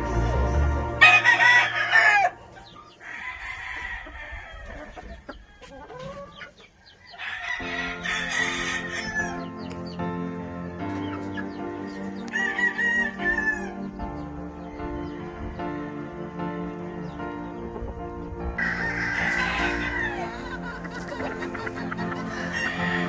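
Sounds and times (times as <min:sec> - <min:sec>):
rooster crowing: 0:01.0 - 0:02.4, 0:03.0 - 0:04.7, 0:18.6 - 0:23.0
distant roosters crowing: 0:01.0 - 0:06.3, 0:07.1 - 0:09.4, 0:12.3 - 0:13.9, 0:18.6 - 0:23.0.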